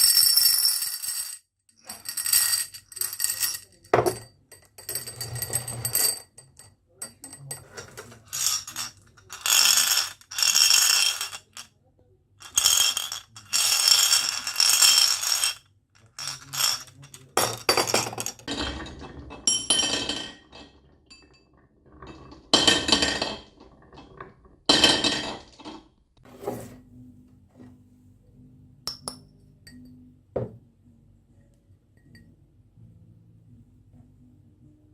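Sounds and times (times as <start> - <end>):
marbles clattering down wooden run: 8.3 - 11.6, 12.4 - 15.6, 16.2 - 18.5.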